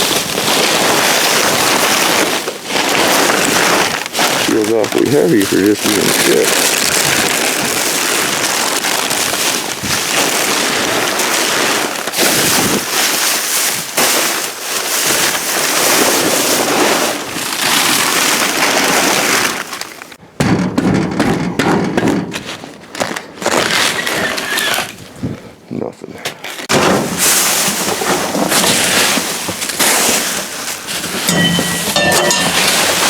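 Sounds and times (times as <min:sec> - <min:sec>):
plastic bag rustling: 0:00.0 - 0:20.2, 0:26.5 - 0:33.0.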